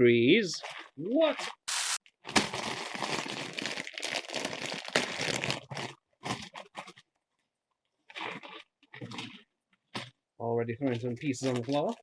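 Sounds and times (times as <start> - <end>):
packaging tearing and crinkling: 1.7 - 7.0.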